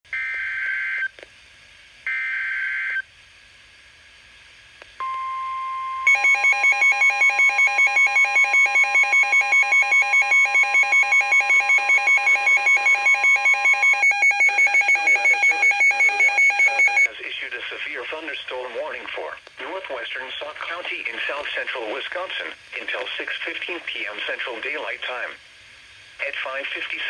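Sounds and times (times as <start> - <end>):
steady warning alarm tone: 5.0 - 17.1
rapid electronic alarm beeping: 6.1 - 17.1.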